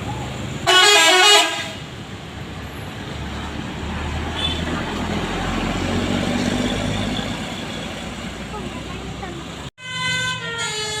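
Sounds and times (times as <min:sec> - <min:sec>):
diesel engine rumble: 0:00.0 - 0:09.7
traffic noise: 0:00.0 - 0:11.0
multi-tone bus horn: 0:00.6 - 0:01.9, 0:04.3 - 0:04.8, 0:09.8 - 0:11.0.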